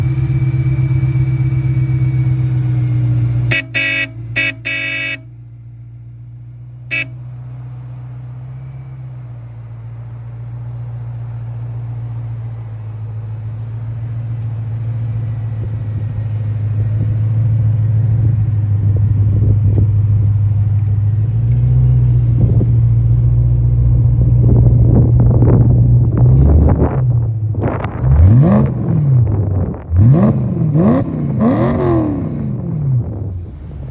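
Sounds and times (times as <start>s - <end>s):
car engine exhaust hum: 0.0s - 33.9s
car horn blasts: 3.5s - 5.4s, 6.9s - 7.2s
engine revving: 6.9s - 7.1s, 23.9s - 33.9s.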